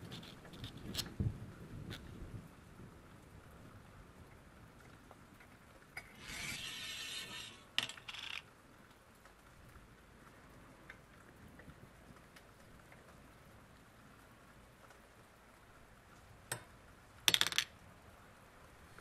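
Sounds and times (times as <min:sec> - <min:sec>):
scraping on metal: 0:06.0 - 0:08.4.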